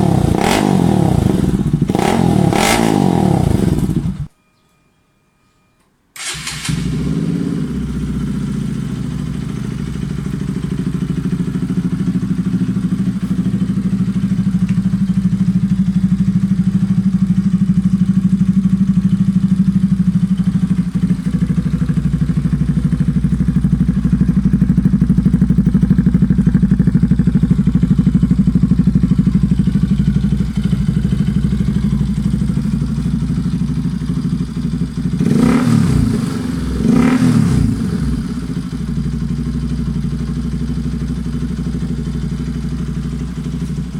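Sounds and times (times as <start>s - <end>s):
motorcycle engine idling: 0.0s - 4.3s, 6.7s - 43.9s.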